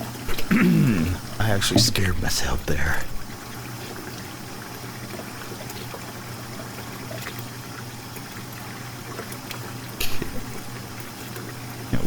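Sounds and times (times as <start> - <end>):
low steady hum: 0.0 - 5.2
tap water running: 0.0 - 12.0.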